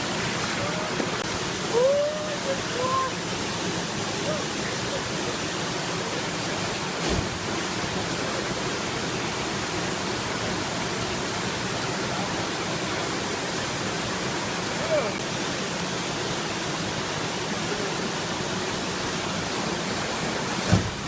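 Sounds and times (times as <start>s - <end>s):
waterfall rushing: 0.0s - 21.0s
brief bump: 20.7s - 21.0s.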